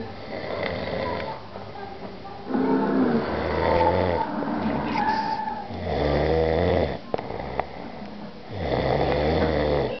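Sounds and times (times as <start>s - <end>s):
man snoring: 5.7s - 7.7s, 8.5s - 9.9s
quiet breath: 7.1s - 8.3s.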